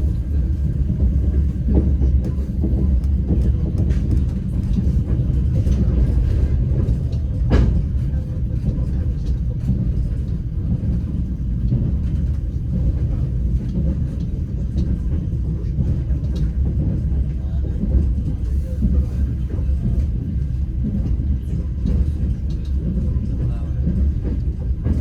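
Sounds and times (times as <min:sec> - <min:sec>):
train wheels rumbling: 0:00.0 - 0:25.0.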